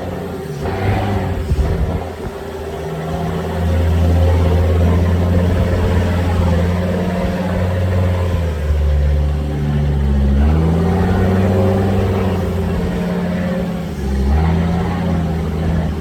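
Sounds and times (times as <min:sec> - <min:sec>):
engine running under load: 0:00.0 - 0:16.0.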